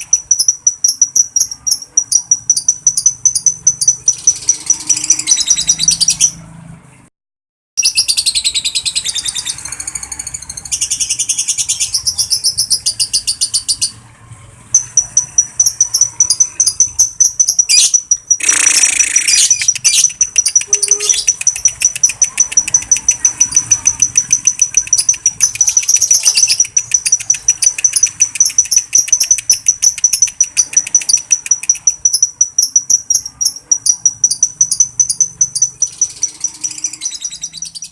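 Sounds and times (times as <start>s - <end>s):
lovebird chattering trill: 0.0s - 6.4s, 14.8s - 37.9s.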